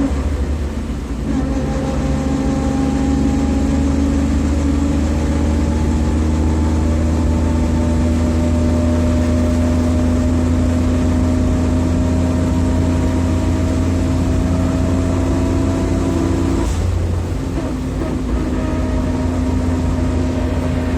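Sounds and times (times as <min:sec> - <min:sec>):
low rumble: 0:07.2 - 0:20.9.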